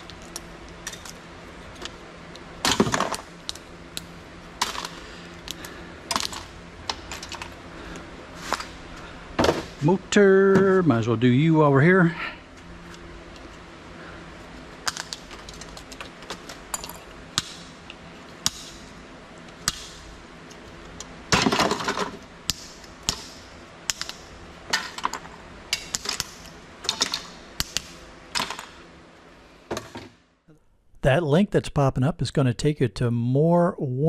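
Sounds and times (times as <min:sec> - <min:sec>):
parts rattling clatter: 0:02.6 - 0:03.6, 0:04.6 - 0:07.6, 0:14.7 - 0:17.2, 0:20.5 - 0:22.2, 0:23.9 - 0:27.7.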